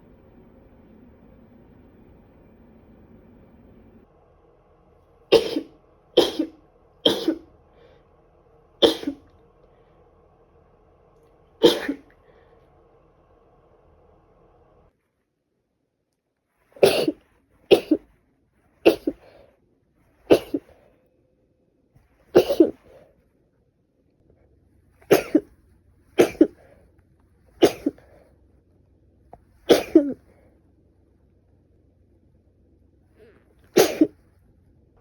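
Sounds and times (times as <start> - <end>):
woman sneezing and coughing: 5.3 - 7.5, 8.8 - 9.3, 11.6 - 12.1, 16.8 - 18.1, 18.8 - 19.4, 20.2 - 20.8, 22.3 - 23.0, 25.0 - 25.6, 26.2 - 26.7, 27.6 - 28.1, 29.6 - 30.3, 33.3 - 34.2.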